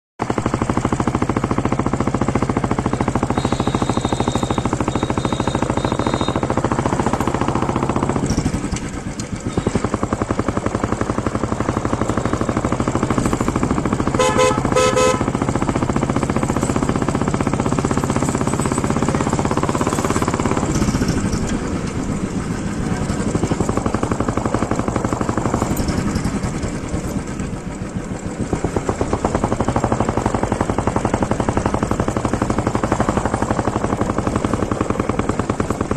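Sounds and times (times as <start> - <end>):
motorcycle engine running: 0.2 - 35.9
horn toots: 3.2 - 6.6, 14.0 - 15.6.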